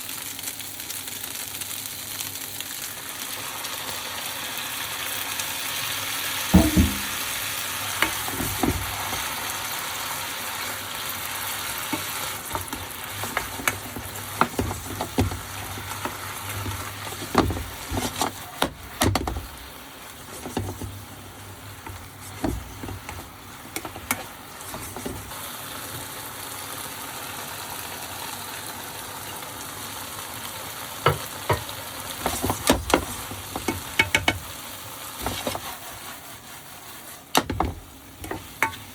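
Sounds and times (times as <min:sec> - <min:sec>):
vegetables sizzling in a frying pan: 0:00.0 - 0:38.9
spatula scraping and tapping pan: 0:06.6 - 0:09.3, 0:11.6 - 0:19.6, 0:20.2 - 0:25.3, 0:31.0 - 0:34.6, 0:35.2 - 0:38.9.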